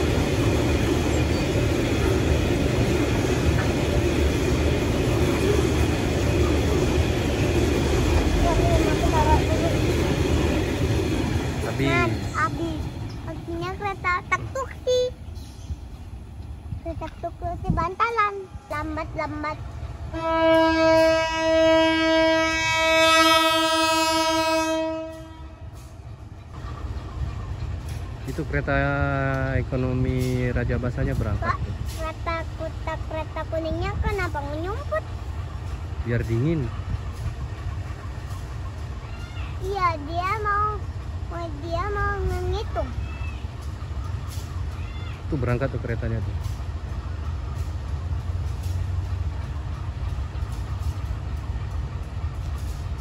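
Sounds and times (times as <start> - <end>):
train rumbling on rails: 0.0 - 53.0
locomotive horn blast: 20.1 - 25.8.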